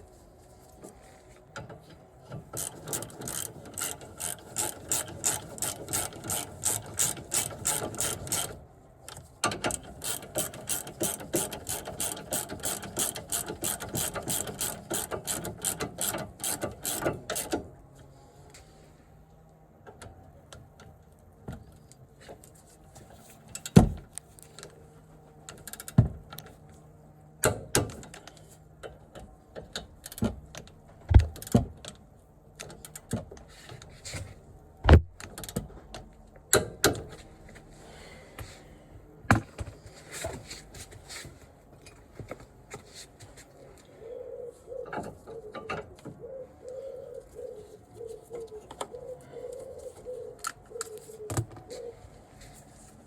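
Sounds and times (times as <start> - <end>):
hand tools clicking and knocking: 1.6 - 17.7
pigeon cooing: 43.9 - 52.2.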